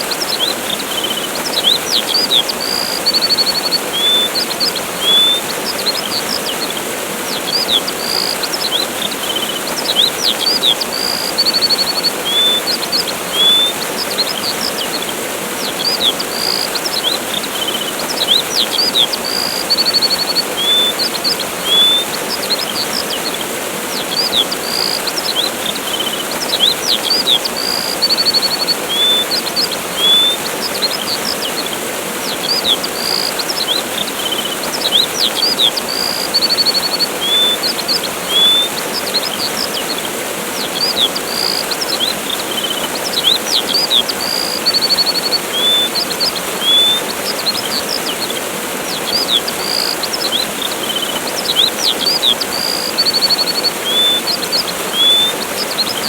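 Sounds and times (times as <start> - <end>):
small birds chirping: 0.0 - 56.0
waterfall rushing: 0.0 - 56.0.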